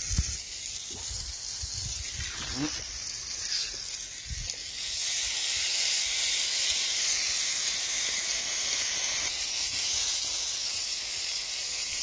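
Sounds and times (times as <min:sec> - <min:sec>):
food sizzling on griddle: 0:00.0 - 0:12.0.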